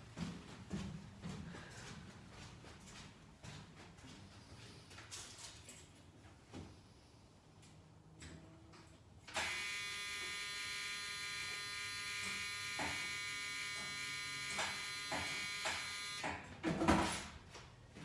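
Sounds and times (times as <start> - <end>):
bus warning buzzer: 9.3 - 16.3.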